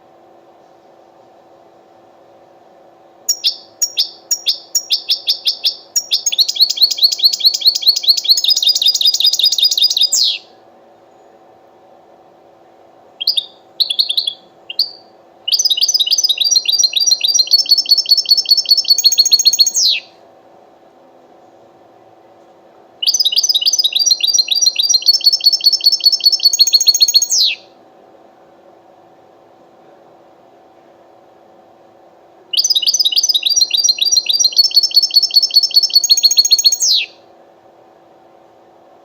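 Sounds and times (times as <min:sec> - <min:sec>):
goldfinch singing rapid trills: 0:03.3 - 0:10.4, 0:13.2 - 0:20.0, 0:23.0 - 0:27.6, 0:32.6 - 0:37.1.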